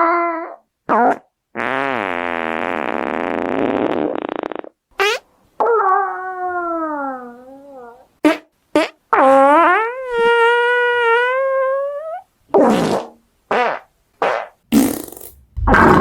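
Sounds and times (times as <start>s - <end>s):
farts: 0.9s - 5.2s, 12.5s - 16.0s.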